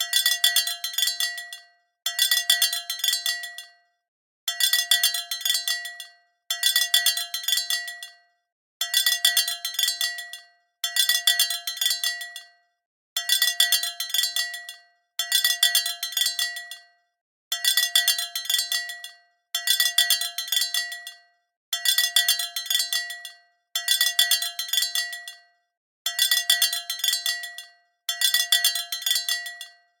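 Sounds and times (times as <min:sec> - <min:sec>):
cow bell clanking: 0:00.0 - 0:01.6.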